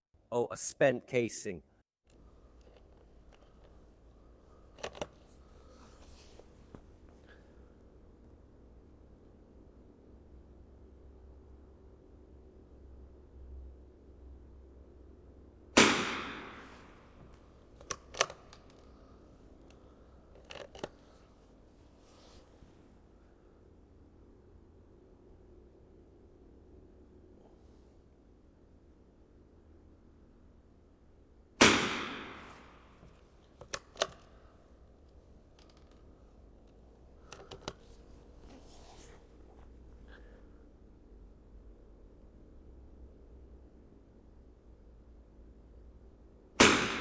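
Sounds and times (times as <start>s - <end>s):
rifle shot: 15.8s - 17.0s, 31.6s - 33.0s, 46.6s - 47.0s
sharp metallic clicks: 17.8s - 18.9s, 33.6s - 34.3s.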